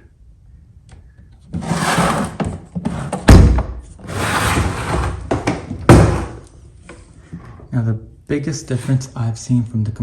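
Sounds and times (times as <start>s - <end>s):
tool box scraping and rubbing: 1.5s - 3.2s, 4.0s - 5.3s, 8.5s - 9.2s
tool box thuds: 4.8s - 6.4s.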